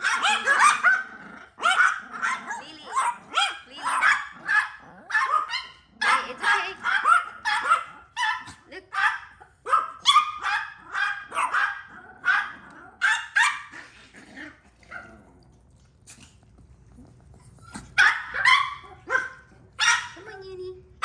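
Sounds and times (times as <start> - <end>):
small dog yapping: 0.0 - 13.8, 17.6 - 20.2.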